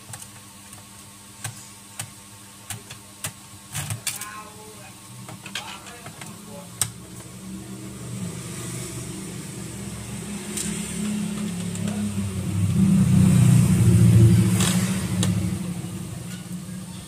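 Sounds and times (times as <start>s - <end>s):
vehicle engine passing by: 7.0s - 17.0s.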